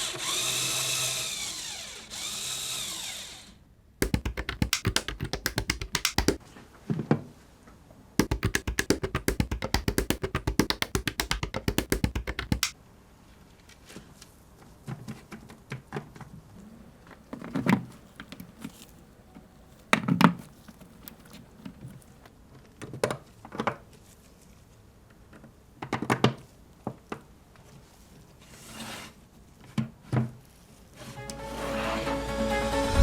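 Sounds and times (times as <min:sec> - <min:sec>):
plastic bricks clicking: 0:04.0 - 0:06.4.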